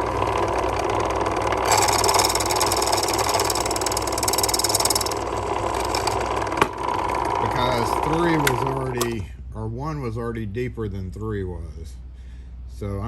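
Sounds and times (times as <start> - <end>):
key-cutting machine motor: 0.0 - 9.2
cutter grinding into key: 1.6 - 9.2.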